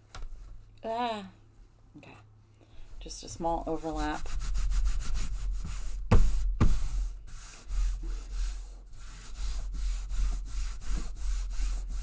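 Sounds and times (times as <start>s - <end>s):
fingers rubbing fabric: 3.4s - 12.0s.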